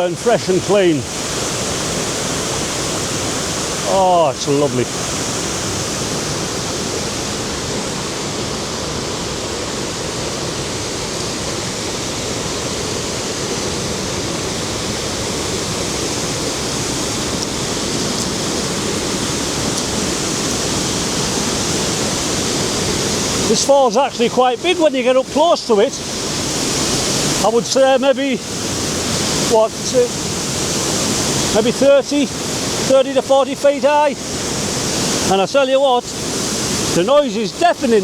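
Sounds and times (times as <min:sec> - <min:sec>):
waterfall rushing: 0:00.0 - 0:38.0.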